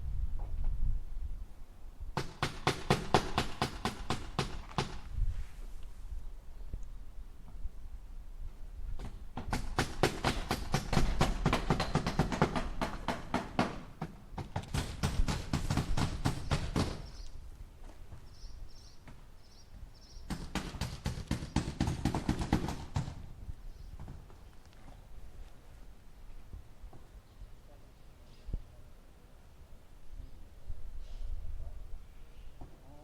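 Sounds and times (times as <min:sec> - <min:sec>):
hammer driving nails into wood: 0:02.2 - 0:05.1, 0:09.0 - 0:17.2, 0:20.3 - 0:23.2.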